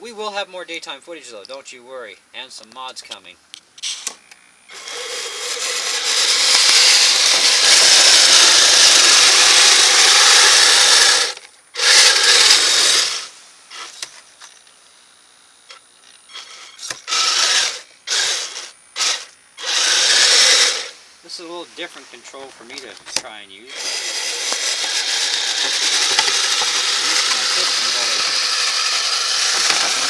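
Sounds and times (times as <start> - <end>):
toy vehicle motor whirring: 3.8 - 14.8, 15.6 - 21.0, 23.7 - 30.0.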